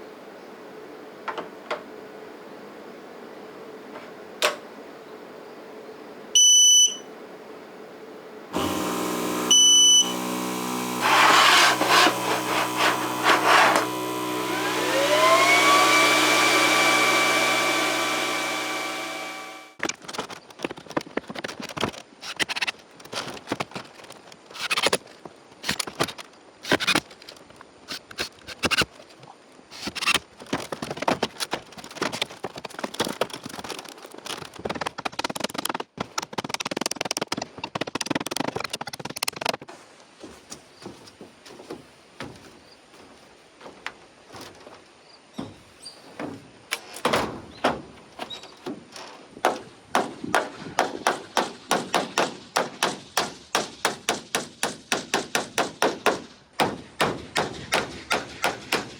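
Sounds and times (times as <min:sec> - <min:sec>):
knocks and clatter of hand work: 0:29.9 - 0:44.8, 0:45.4 - 0:58.9.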